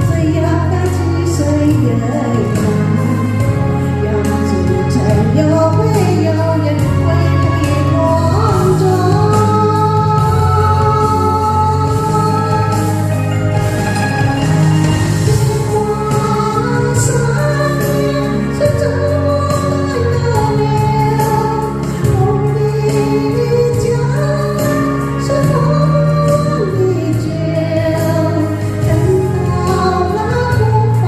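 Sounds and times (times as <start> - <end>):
pop ballad backing track: 0.0 - 31.0
woman singing: 0.0 - 31.0.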